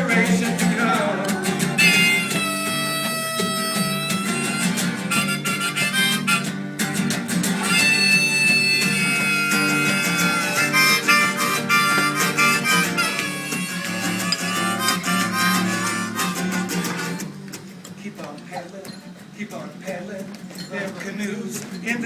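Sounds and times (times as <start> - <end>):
harmonica melody: 0.0 - 17.3
strummed acoustic guitar: 0.0 - 22.0.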